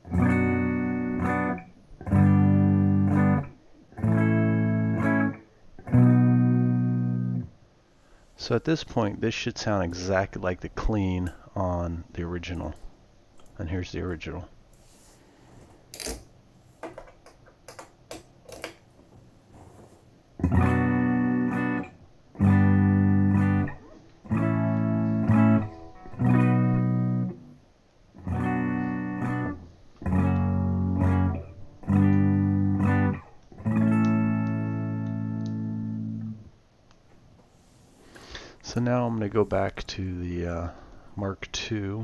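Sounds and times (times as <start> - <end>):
electric guitar strummed chords: 0.0 - 7.5, 20.4 - 27.6, 28.2 - 36.5.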